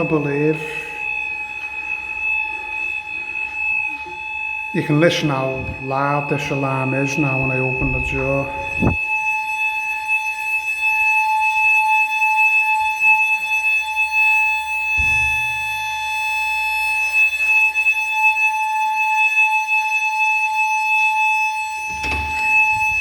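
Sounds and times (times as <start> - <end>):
fire alarm high-pitched tone: 0.0 - 23.0
low thumps: 5.5 - 5.9, 7.4 - 9.0, 15.0 - 16.0.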